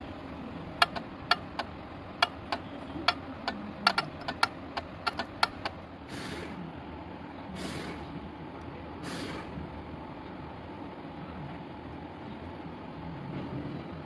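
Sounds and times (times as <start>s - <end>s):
low steady hum: 0.0s - 14.0s
sharp metallic clicks: 0.8s - 5.8s.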